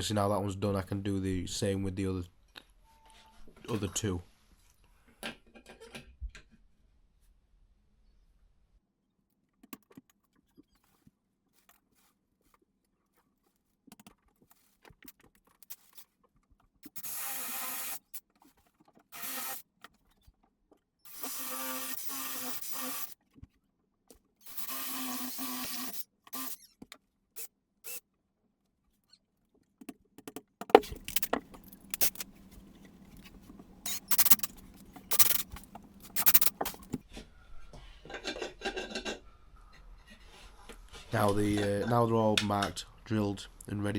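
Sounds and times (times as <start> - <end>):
drill boring into wall: 16.9 - 18.2, 19.1 - 19.6, 21.1 - 23.2, 24.4 - 26.7, 27.4 - 28.0, 30.8 - 37.0
sharp knocks and rattles: 30.2 - 37.0
low steady hum: 30.8 - 37.0.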